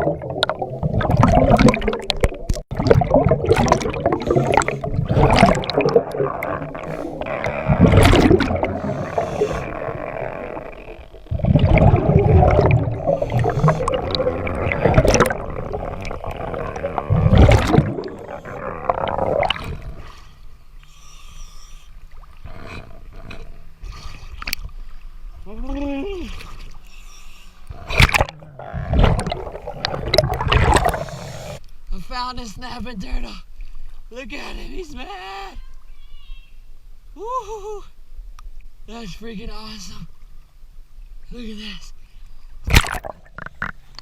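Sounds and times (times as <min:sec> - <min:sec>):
underwater exhalation bubbling: 0:00.0 - 0:20.3, 0:27.7 - 0:31.6, 0:42.7 - 0:44.0
water noise: 0:00.0 - 0:44.0.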